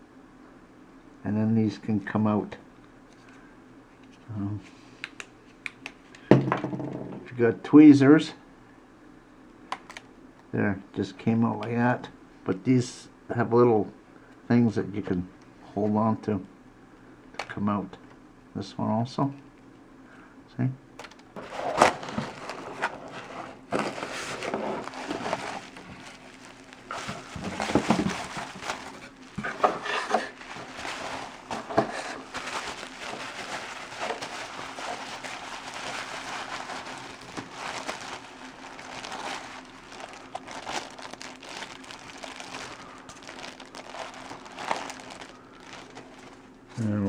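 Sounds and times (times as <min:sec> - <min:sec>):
plastic packaging crinkling: 0:21.0 - 0:46.9.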